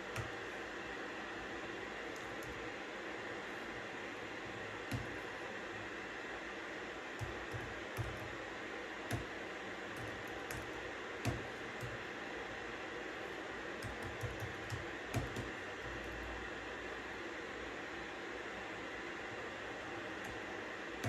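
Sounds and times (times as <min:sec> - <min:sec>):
keyboard keystrokes clicking: 0:07.2 - 0:08.4, 0:10.0 - 0:12.0, 0:13.8 - 0:16.1.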